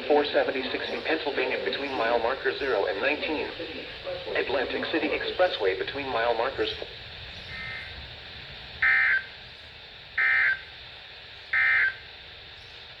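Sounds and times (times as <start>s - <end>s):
faint radio hiss: 0.0s - 13.0s
two-tone digital squawks: 11.6s - 12.0s.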